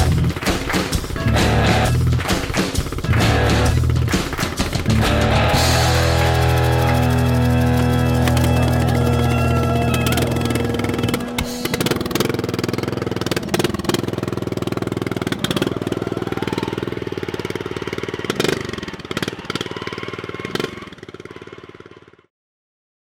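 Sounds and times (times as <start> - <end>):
music: 0.0 - 11.9
racing lawn mower engine: 0.0 - 22.3.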